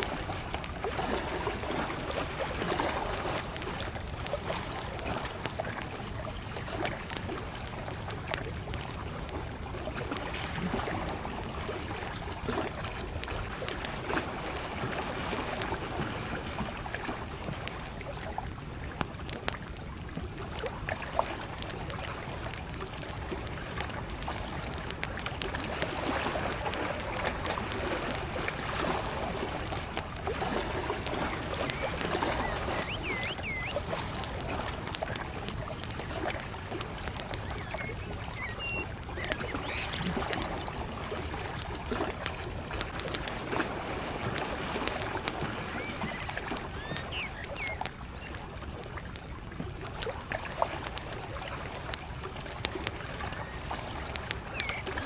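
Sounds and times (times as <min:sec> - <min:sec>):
campfire crackling and popping: 0:00.0 - 0:55.0
lake waves lapping: 0:00.0 - 0:55.0
distant bird chirps: 0:31.0 - 0:34.4, 0:36.8 - 0:41.0, 0:44.9 - 0:48.6, 0:53.3 - 0:55.0.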